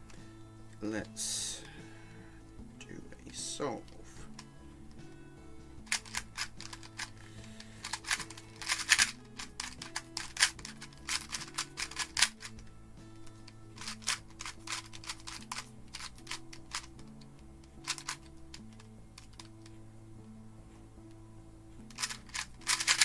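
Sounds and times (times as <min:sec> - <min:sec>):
puzzle cube plastic clicks: 0:05.8 - 0:12.6, 0:13.2 - 0:19.8, 0:21.9 - 0:23.0.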